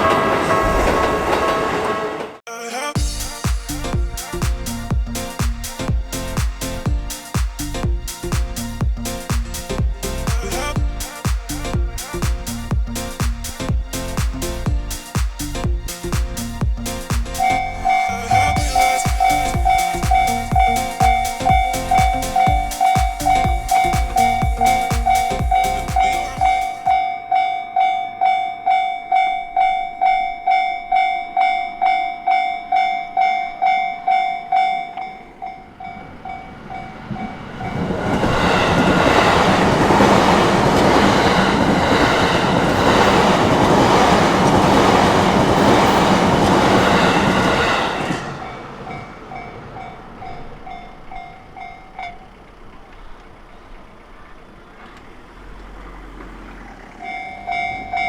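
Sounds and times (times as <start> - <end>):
train passing over rails: 0.0 - 2.4, 3.0 - 58.0
level-crossing warning bell: 17.4 - 53.9, 57.0 - 58.0.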